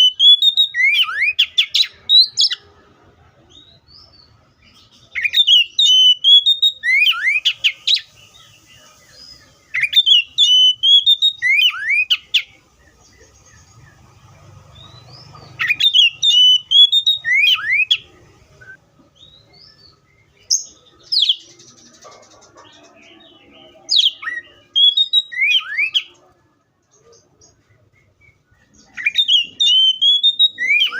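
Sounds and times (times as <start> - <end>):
bird singing whistled phrases: 0.0 - 2.6, 5.1 - 12.6, 15.6 - 21.5, 23.9 - 26.2, 27.7 - 30.9.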